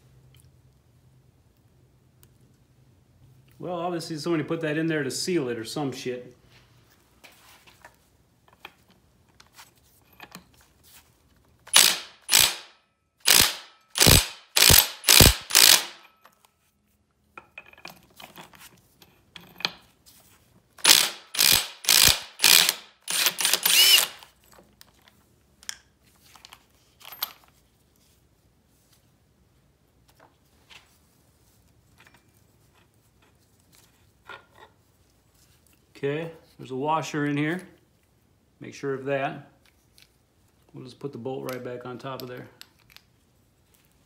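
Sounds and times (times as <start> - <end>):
socket ratchet clicking: 11.7 - 12.7, 13.3 - 16.0, 20.8 - 24.2.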